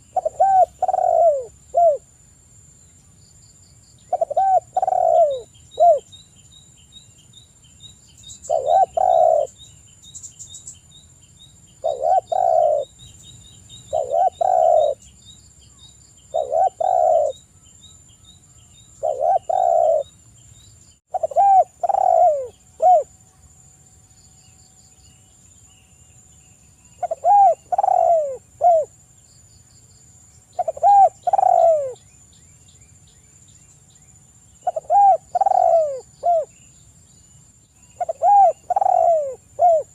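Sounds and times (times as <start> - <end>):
dove cooing: 0.0 - 2.0, 4.1 - 6.1, 8.5 - 9.6, 11.8 - 13.0, 13.9 - 15.0, 16.3 - 17.4, 19.0 - 20.1, 21.1 - 23.1, 27.0 - 28.9, 30.6 - 32.0, 34.6 - 36.5, 38.0 - 39.9
faint high chirping: 2.7 - 39.9.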